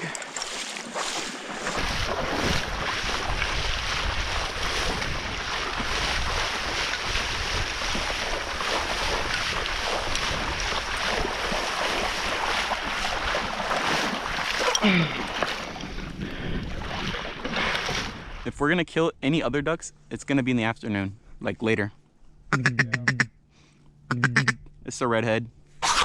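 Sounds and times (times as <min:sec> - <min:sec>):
wind buffeting microphone: 0:01.6 - 0:18.5.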